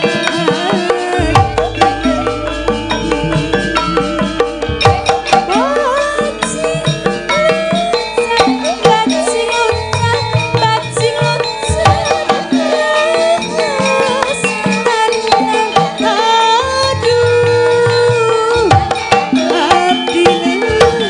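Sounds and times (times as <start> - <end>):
sharp drum strokes: 0.0 - 9.2
gamelan music: 0.0 - 21.0.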